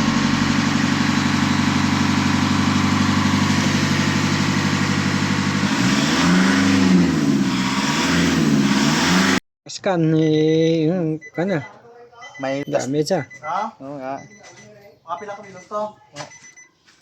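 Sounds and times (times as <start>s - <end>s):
diesel engine idling and revving: 0.0s - 9.4s.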